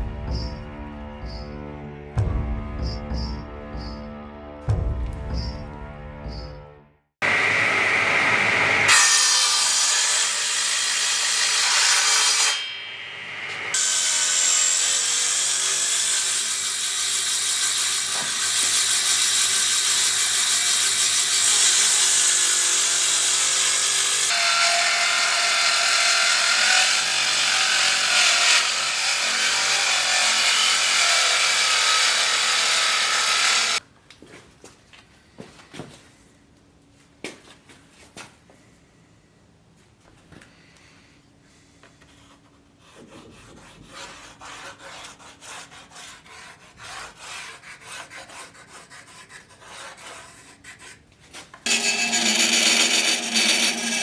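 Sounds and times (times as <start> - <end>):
power tool cutting wood: 7.2 - 33.8, 51.6 - 54.0.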